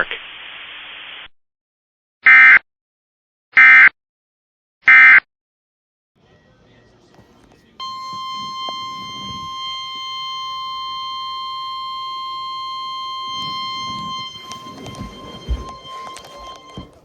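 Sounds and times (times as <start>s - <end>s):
shrill steady warning tone: 7.7s - 17.0s.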